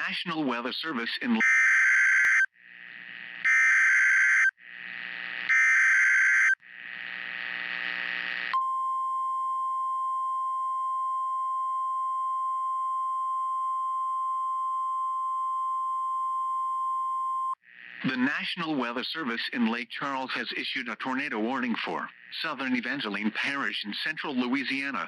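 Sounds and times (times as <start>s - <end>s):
radio hiss: 17.8s - 25.0s.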